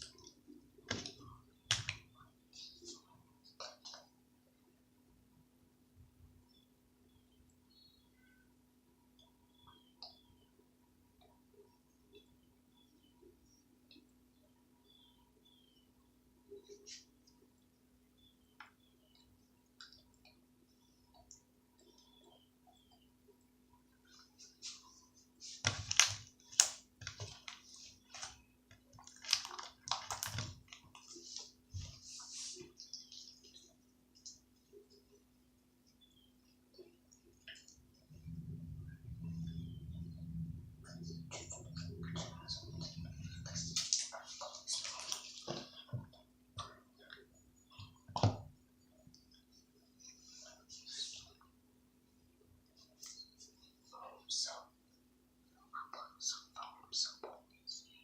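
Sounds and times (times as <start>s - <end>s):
slime squelching: 29.0s - 34.4s
steady low hum: 31.0s - 58.0s.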